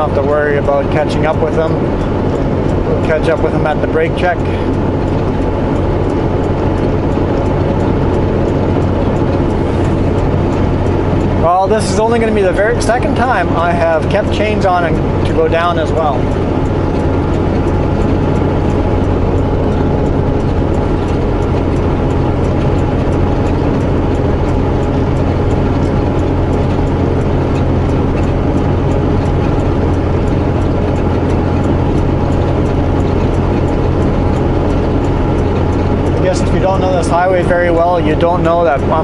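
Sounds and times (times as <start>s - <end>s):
diesel truck engine droning: 0.0s - 39.0s
road noise: 0.0s - 39.0s
faint regular clicking: 12.5s - 39.0s.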